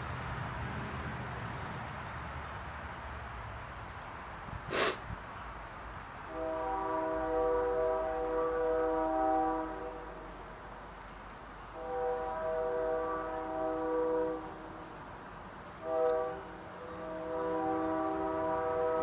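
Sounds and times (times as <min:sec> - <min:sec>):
train air horn blasts: 0:06.3 - 0:10.4, 0:11.7 - 0:15.0, 0:15.8 - 0:19.0.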